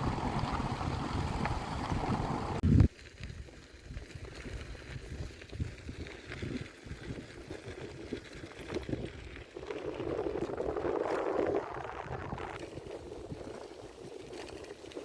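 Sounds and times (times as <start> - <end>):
wind hiss: 0.0 - 3.0.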